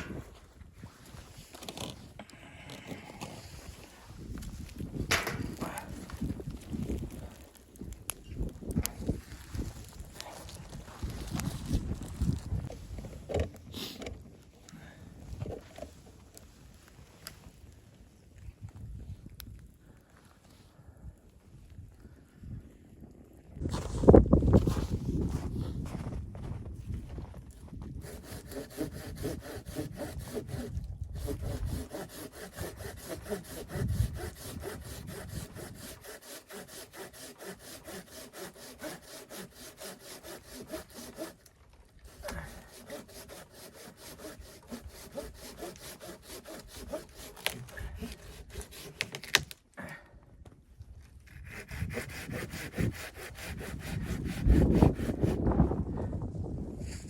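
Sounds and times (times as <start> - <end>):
hand saw cutting wood: 28.0 - 49.6, 51.2 - 55.4.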